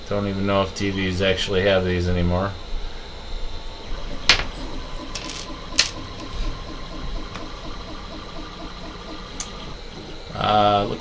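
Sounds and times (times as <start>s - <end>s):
steady background hum: 0.0s - 11.0s.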